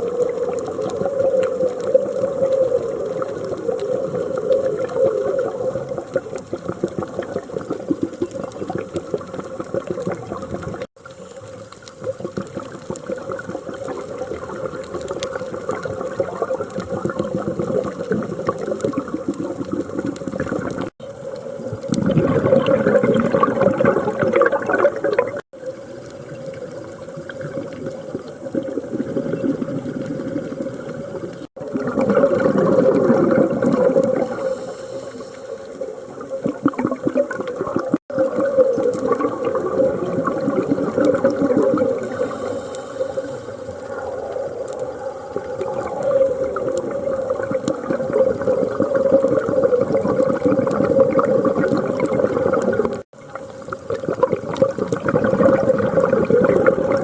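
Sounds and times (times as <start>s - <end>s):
bubbling exhaled air underwater: 0.0s - 57.0s
diver inhaling through regulator: 34.0s - 35.9s, 41.8s - 44.0s.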